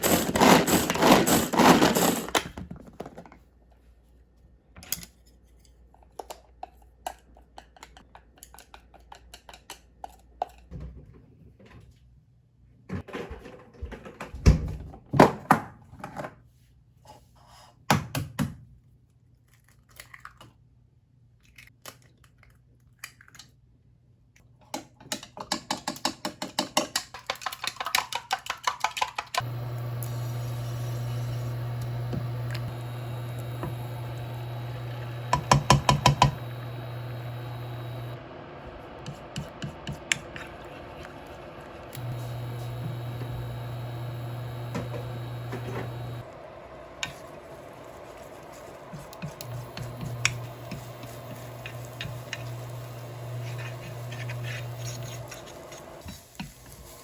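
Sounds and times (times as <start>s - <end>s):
steady low hum: 29.4s - 56.0s.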